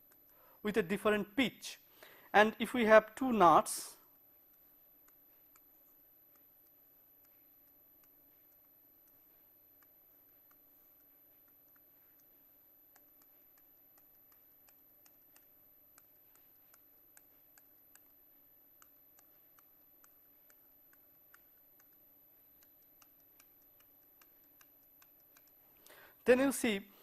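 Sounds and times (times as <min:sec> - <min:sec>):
pen clicking on writing surface: 0:04.5 - 0:25.6.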